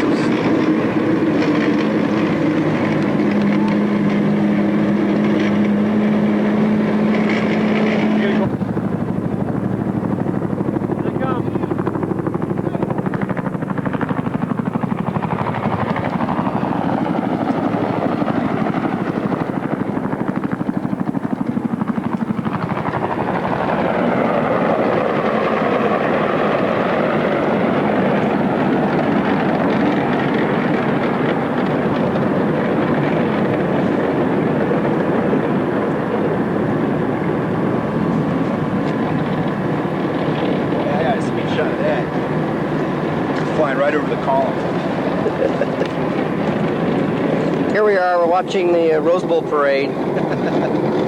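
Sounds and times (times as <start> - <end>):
helicopter rotor beating overhead: 0.0 - 51.0.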